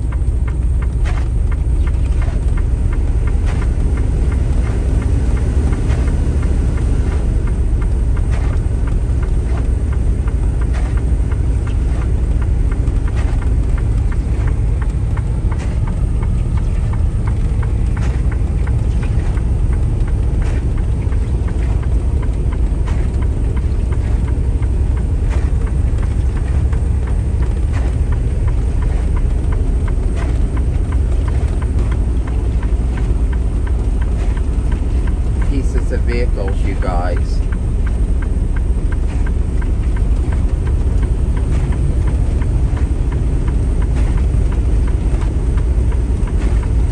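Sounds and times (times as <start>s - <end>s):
truck diesel engine rumble: 0.0s - 46.9s.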